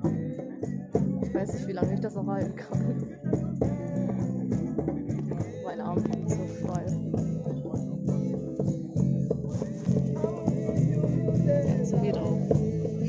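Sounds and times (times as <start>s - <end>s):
bass line: 0.0s - 13.0s
plucked guitar notes: 0.0s - 13.0s.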